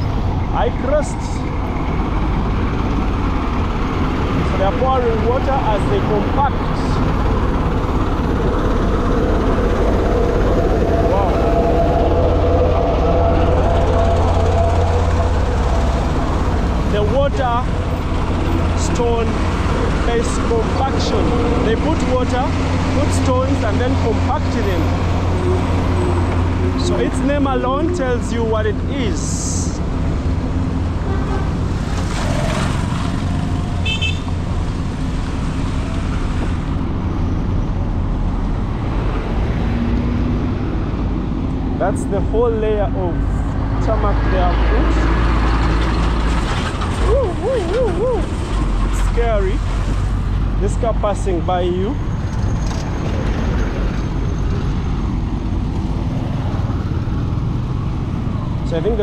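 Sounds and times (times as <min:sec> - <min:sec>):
road traffic rumble: 0:00.0 - 0:59.0
high-pitched horn toot: 0:10.5 - 0:16.9.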